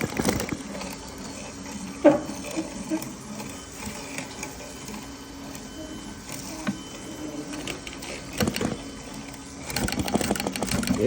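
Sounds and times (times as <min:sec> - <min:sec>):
sewing machine whirring: 0:00.0 - 0:11.0
sewing machine clicks: 0:09.6 - 0:11.0.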